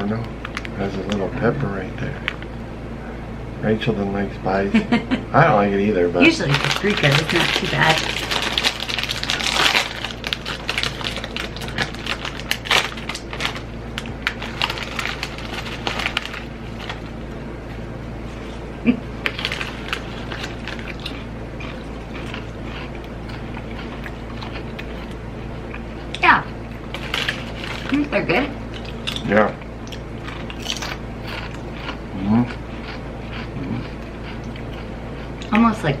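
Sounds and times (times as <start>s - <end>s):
snack bag crinkling: 6.2s - 25.2s, 25.8s - 28.1s, 28.7s - 33.5s
potato chips crunching: 6.2s - 35.7s.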